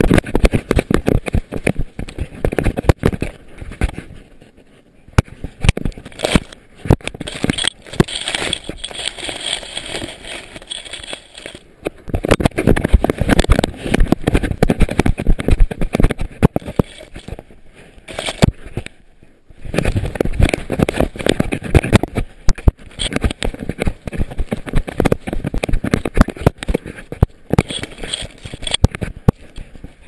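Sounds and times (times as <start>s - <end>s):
camera knocking and rattling: 0.0s - 4.0s, 5.2s - 17.5s, 18.1s - 18.9s, 19.7s - 30.0s
crackling rubbing on housing: 5.3s - 19.0s, 19.7s - 29.9s.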